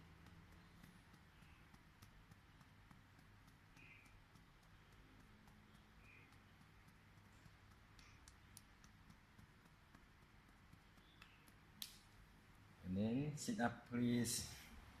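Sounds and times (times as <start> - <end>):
fingertips tapping on head: 0.0 - 12.2.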